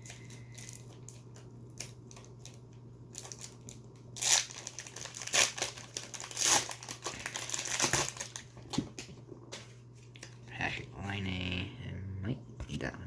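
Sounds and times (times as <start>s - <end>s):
card pack wrapper crinkling: 0.0s - 10.4s.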